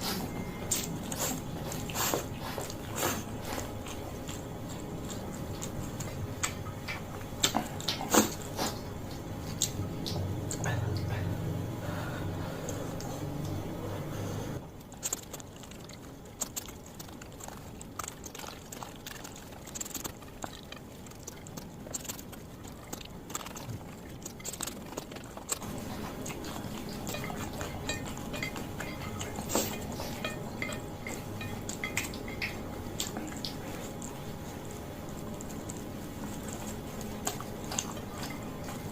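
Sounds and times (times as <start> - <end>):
close chewing of noodles: 0.0 - 38.9
utensil clinking on dish: 26.0 - 33.6, 37.3 - 38.9.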